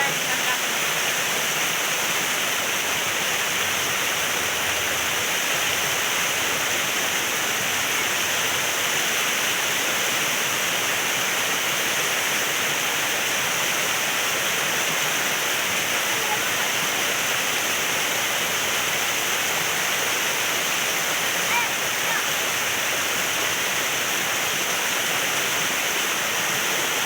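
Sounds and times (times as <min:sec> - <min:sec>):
rushing river water: 0:00.0 - 0:27.0.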